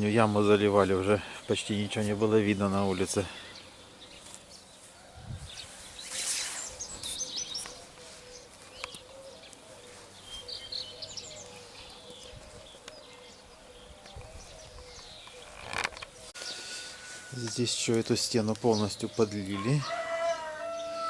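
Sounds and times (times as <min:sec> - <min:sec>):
songbirds chirping and whistling: 0:00.0 - 0:21.0
brief rustle: 0:06.0 - 0:09.0.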